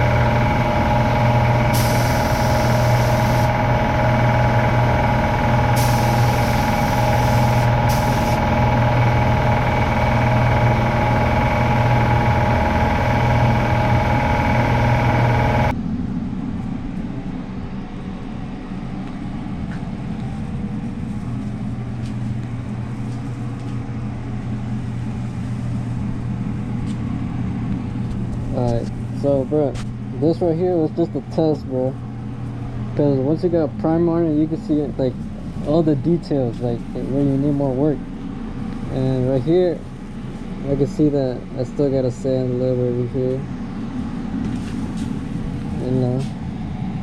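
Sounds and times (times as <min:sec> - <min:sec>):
machine humming: 0:00.0 - 0:47.0
hissing air bursts: 0:01.4 - 0:03.7, 0:05.5 - 0:08.8.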